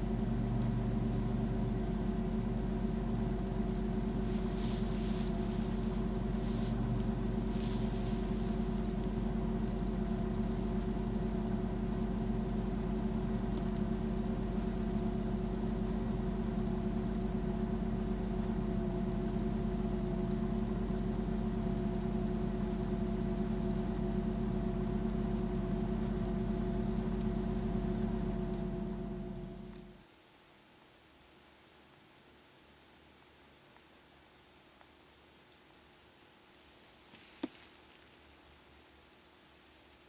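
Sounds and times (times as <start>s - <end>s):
car engine idling: 0.0s - 30.0s.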